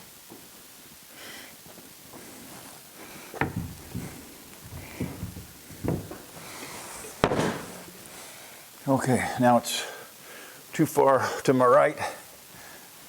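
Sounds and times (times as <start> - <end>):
wooden board knocks and clunks: 3.4 - 6.4, 7.2 - 8.0.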